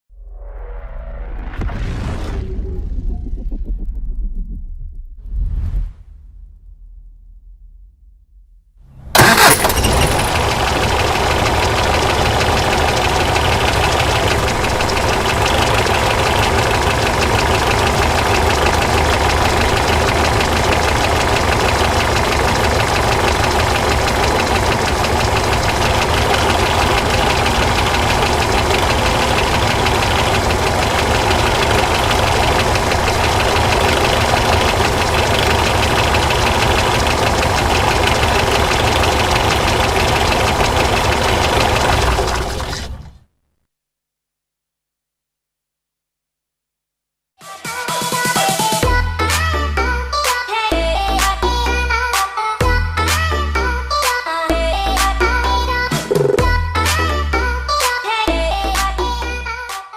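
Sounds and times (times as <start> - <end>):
bus engine starting and idling: 9.0 - 43.3.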